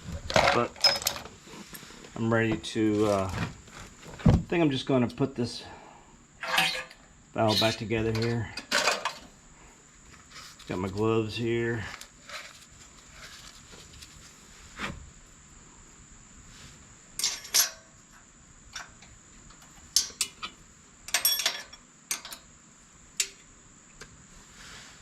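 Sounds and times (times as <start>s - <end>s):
metal parts and tools clinking: 0.3s - 1.3s, 6.4s - 9.2s, 17.2s - 17.9s, 21.1s - 22.5s.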